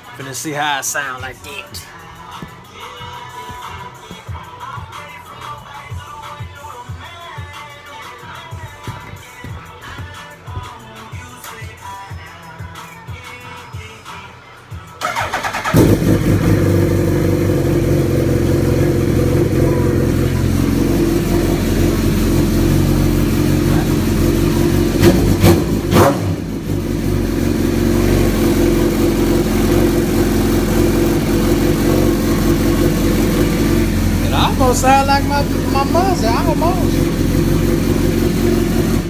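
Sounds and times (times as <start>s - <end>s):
motorcycle engine cranking: 15.0s - 19.5s
engine revving blips: 15.0s - 39.0s
motorcycle engine idling: 15.0s - 39.0s.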